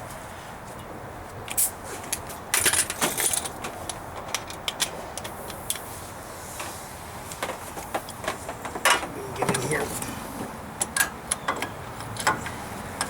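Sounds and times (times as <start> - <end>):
metal tools clinking: 2.6 - 3.6.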